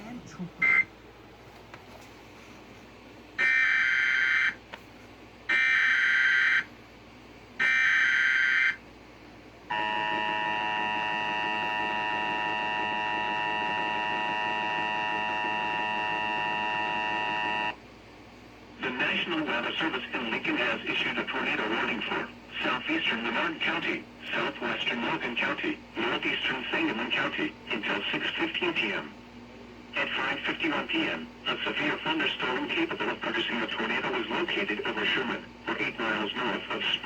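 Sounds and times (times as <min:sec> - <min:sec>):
steady attention tone: 0:09.7 - 0:17.8.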